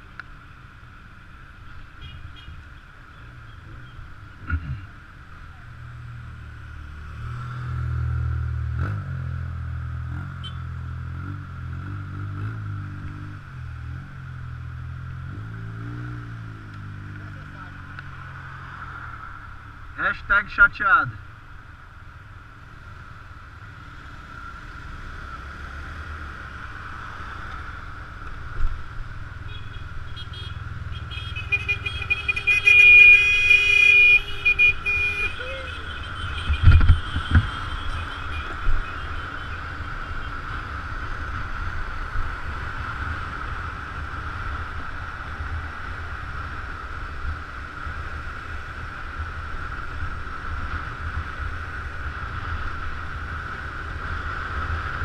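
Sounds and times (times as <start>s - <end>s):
horn tone: 29.5s - 39.6s.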